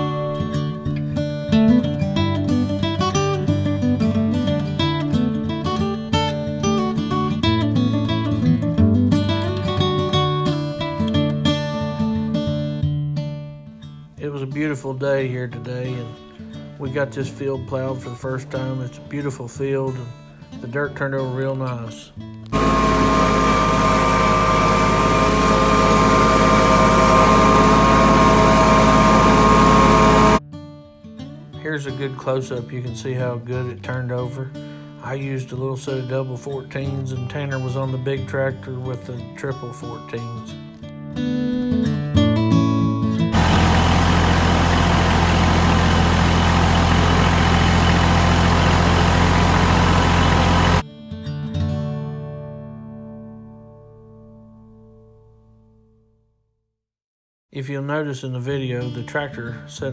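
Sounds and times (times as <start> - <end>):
tractor engine under load: 22.6 - 30.4, 43.4 - 50.8.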